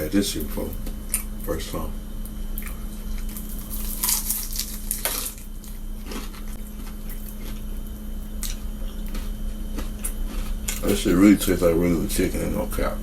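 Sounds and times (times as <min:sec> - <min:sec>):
steady low hum: 0:00.0 - 0:13.0
crunchy chewing: 0:02.2 - 0:11.2.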